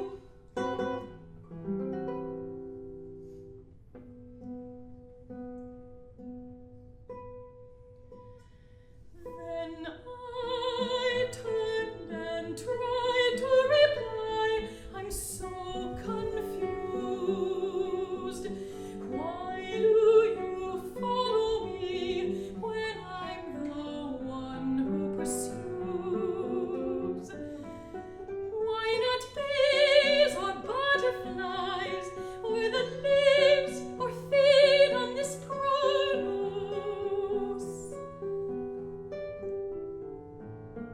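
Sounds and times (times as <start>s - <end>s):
woman singing with vibrato: 0.0s - 0.3s, 9.3s - 27.6s, 28.5s - 38.2s
plucked guitar: 0.0s - 40.9s.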